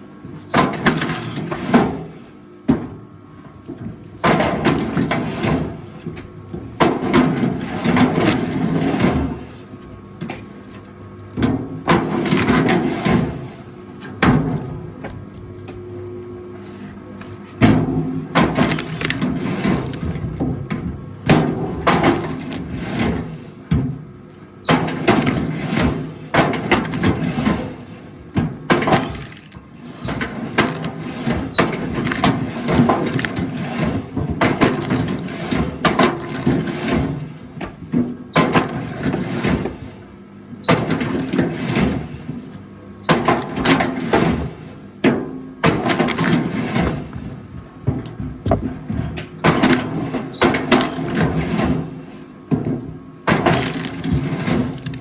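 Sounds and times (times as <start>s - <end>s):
steady motor hum: 0.0s - 55.0s
wood knocking and clattering: 47.5s - 49.6s.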